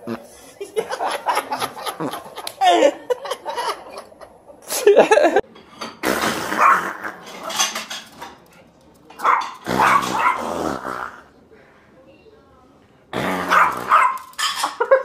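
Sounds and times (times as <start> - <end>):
clattering and scrabbling: 7.2 - 10.2
dog barking: 9.2 - 10.5, 13.5 - 14.3.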